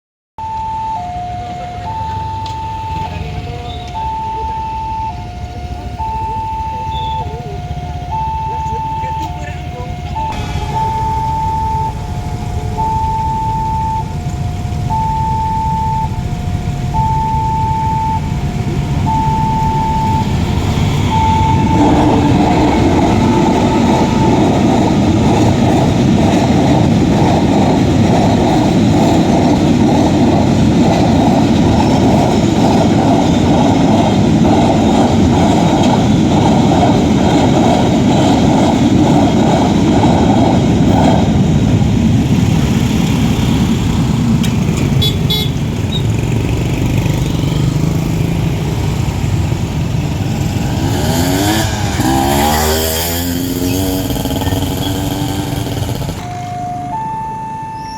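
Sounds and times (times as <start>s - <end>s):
two-note crossing alarm: 0.4s - 26.1s, 51.2s - 57.9s
train wheels clattering on rails: 20.0s - 56.4s.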